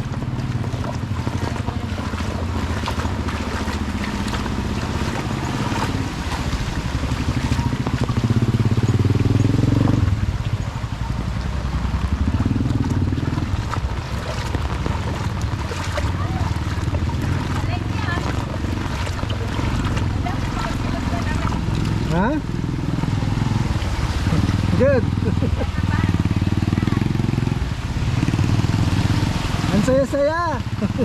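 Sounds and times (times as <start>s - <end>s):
vehicle engine running: 0.0s - 31.0s.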